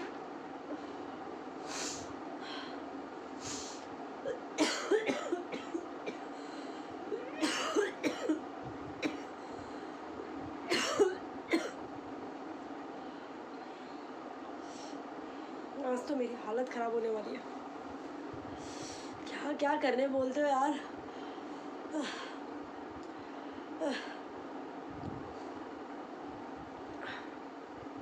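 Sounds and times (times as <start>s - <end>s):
woman coughing: 4.3s - 6.3s, 7.2s - 8.4s, 9.0s - 9.4s, 10.7s - 11.8s.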